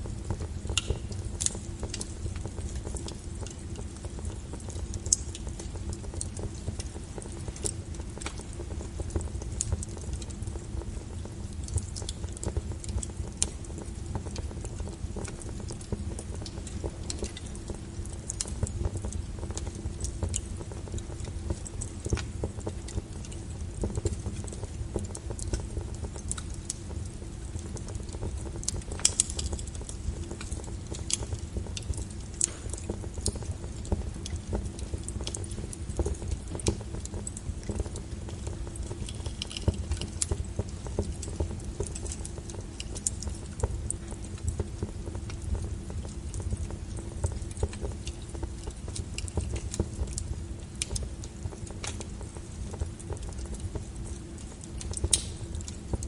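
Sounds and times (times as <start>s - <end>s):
low rumble of flames: 0.0s - 56.0s
wood fire crackling and popping: 0.0s - 56.0s.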